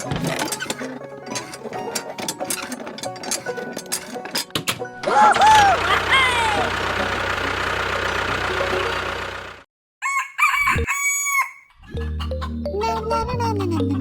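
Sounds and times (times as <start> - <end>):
rooster crowing: 10.0 - 11.7.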